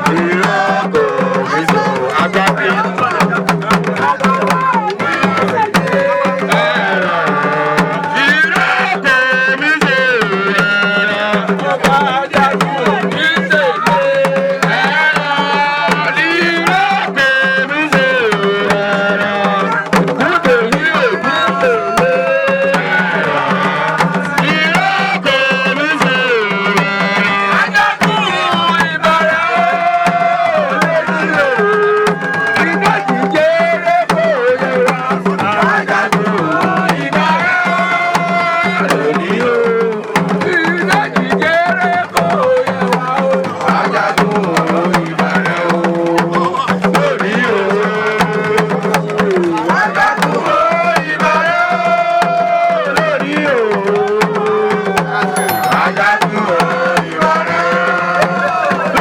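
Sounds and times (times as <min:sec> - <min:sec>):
hand drum strokes: 0:55.2 - 0:56.5
sliding pitch melody: 0:55.4 - 0:56.1.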